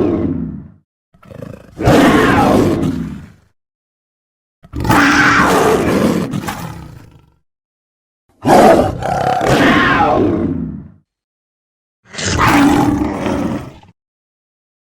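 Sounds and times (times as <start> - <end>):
big cat calls: 1.2 - 3.4, 4.7 - 7.4, 8.4 - 10.9.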